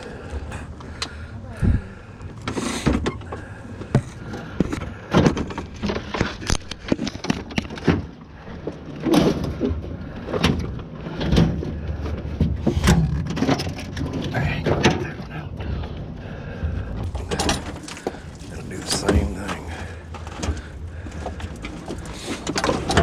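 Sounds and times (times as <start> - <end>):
objects knocking and rattling: 2.4 - 15.2, 20.0 - 23.0.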